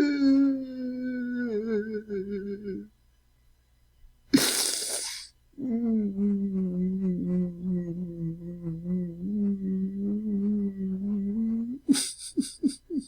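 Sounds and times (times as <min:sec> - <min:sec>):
man moaning: 0:05.6 - 0:13.0.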